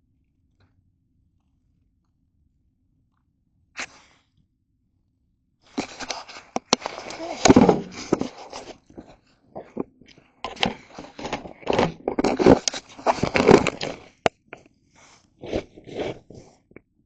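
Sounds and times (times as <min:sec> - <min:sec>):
dry kindling crackling: 0:05.7 - 0:16.8.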